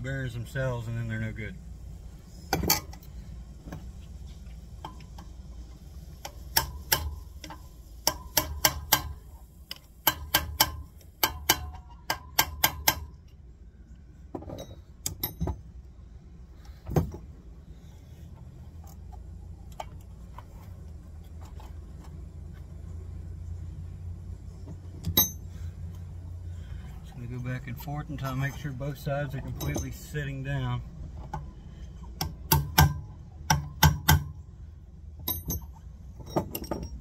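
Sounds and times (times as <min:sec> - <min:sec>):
hammer tapping on metal: 0:06.5 - 0:09.2, 0:10.0 - 0:13.2.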